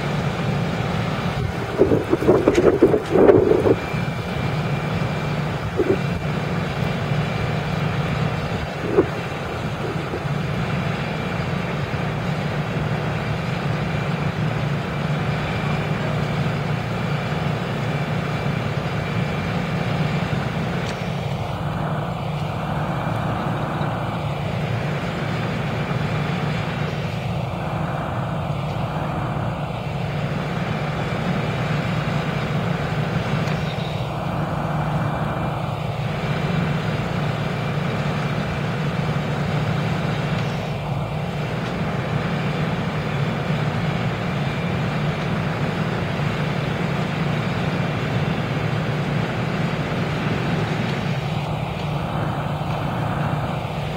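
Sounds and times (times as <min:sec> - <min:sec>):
vehicle engine rumbling: 0:00.0 - 0:53.9.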